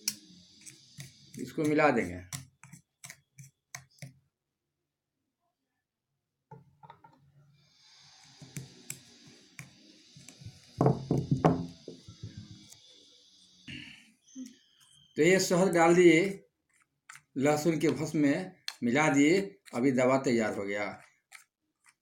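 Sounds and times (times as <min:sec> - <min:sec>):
faint hiss: 0:07.6 - 0:14.4.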